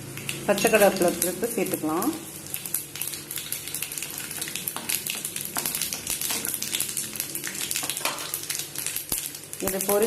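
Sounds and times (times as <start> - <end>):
oil frying hiss: 0.0 - 10.0
seeds popping in hot oil: 0.0 - 10.0.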